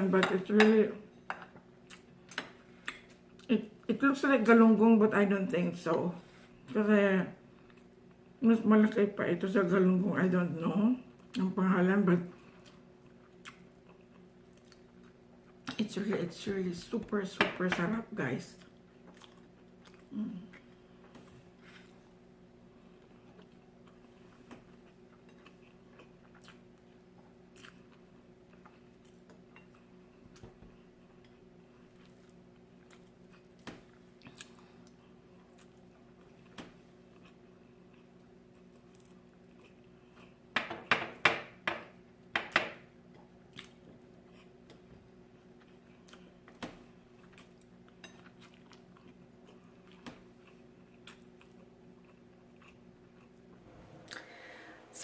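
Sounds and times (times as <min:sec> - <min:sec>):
person chewing crisp food: 0:18.6 - 0:20.8, 0:22.9 - 0:30.2, 0:30.8 - 0:40.5, 0:45.3 - 0:54.3
steady low hum: 0:41.6 - 0:55.0.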